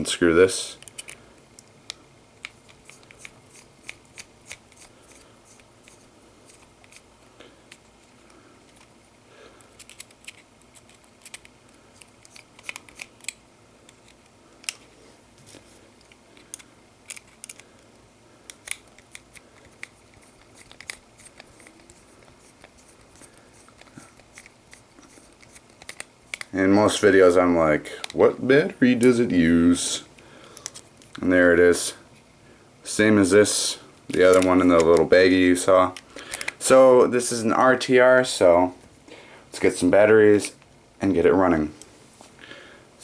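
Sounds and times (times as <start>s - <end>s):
screwdriver clicking and scraping: 0.8s - 1.7s, 9.8s - 14.8s, 16.0s - 17.7s, 18.5s - 26.5s.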